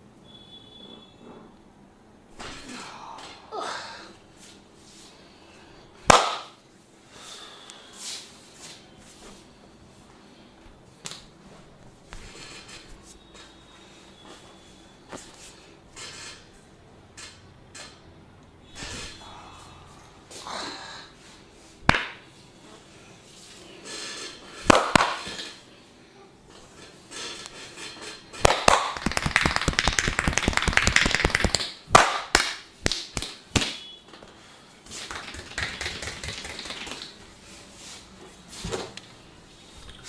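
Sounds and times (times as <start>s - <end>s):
percussive massage strikes: 6.1s - 6.6s, 21.9s - 22.3s, 24.6s - 25.3s, 28.4s - 33.8s, 35.1s - 37.0s.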